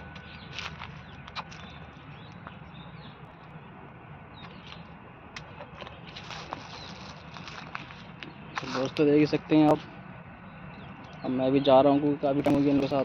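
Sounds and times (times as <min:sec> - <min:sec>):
bird chirps: 0:00.0 - 0:13.0.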